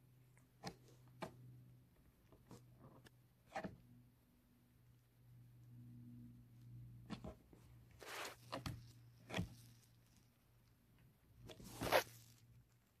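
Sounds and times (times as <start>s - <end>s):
faint steady hum: 0.0s - 13.0s
rustling and scuffing: 8.0s - 8.8s, 11.6s - 12.4s.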